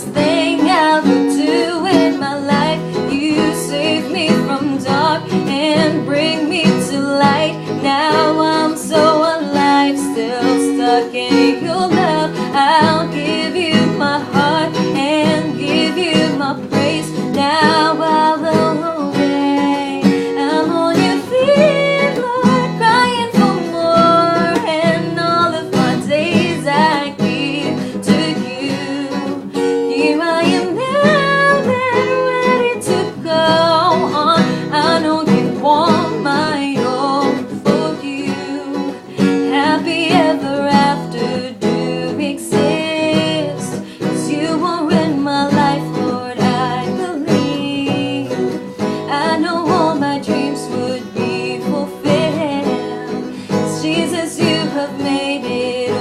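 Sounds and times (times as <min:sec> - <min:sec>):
wordless singing: 0:00.0 - 0:48.3, 0:49.1 - 0:56.0
pop song with guitar: 0:00.0 - 0:56.0.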